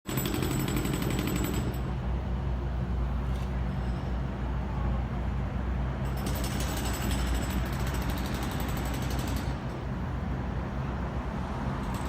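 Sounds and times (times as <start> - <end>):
jackhammer hammering concrete: 0.1 - 1.8, 6.1 - 9.5.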